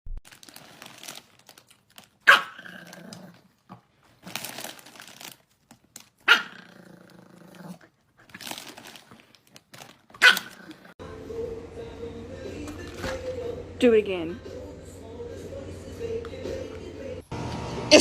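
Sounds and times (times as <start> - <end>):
dog barking: 2.2 - 2.6, 6.3 - 6.7, 10.2 - 10.6.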